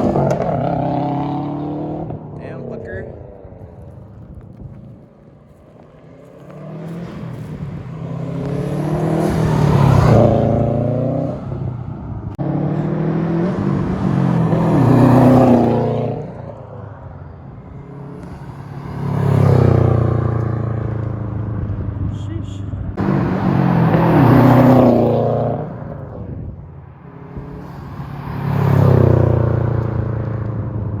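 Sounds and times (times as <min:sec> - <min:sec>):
car engine accelerating hard: 0:00.0 - 0:05.0, 0:06.2 - 0:22.0, 0:22.9 - 0:31.0.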